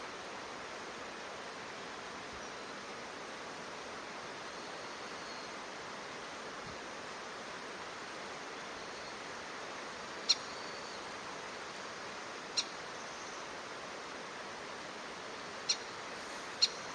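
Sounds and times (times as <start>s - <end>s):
steady hiss: 0.0s - 16.9s
short high bird calls: 15.7s - 16.9s.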